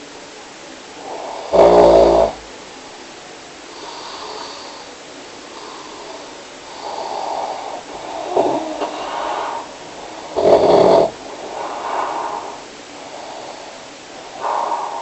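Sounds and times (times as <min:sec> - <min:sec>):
person snoring: 0:01.0 - 0:02.4, 0:05.6 - 0:15.0.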